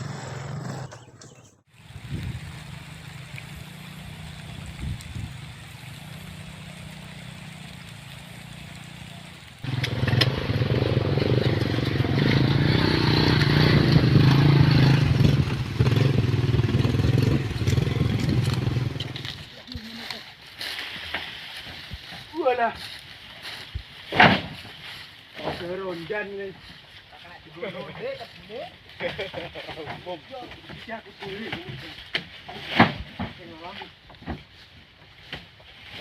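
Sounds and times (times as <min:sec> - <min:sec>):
vehicle engine running: 0:00.0 - 0:20.0.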